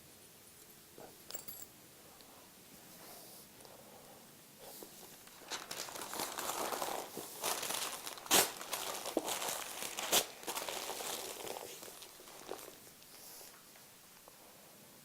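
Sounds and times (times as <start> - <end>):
packing wrap crinkling: 5.1 - 12.9.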